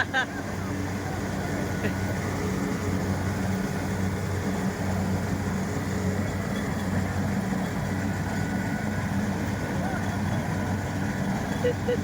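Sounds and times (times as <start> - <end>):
combine harvester engine hum: 0.0 - 12.0.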